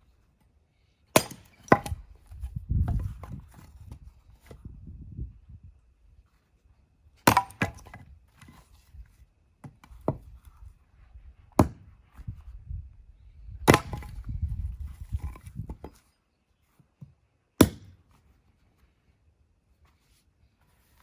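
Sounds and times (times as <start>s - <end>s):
axe chopping firewood: 1.1s - 2.0s, 7.2s - 8.5s, 11.6s - 11.9s, 13.6s - 14.2s, 17.6s - 18.0s.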